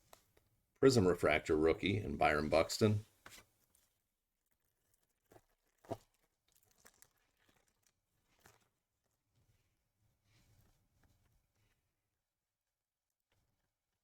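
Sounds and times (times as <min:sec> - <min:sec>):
foil wrapper crinkling: 0:04.6 - 0:08.8.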